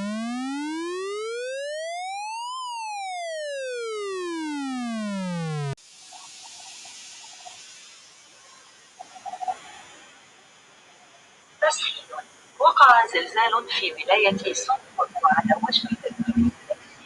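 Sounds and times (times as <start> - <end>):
synthesized siren tone: 0.0 - 5.8, 15.2 - 16.6
faint hiss: 5.8 - 17.0.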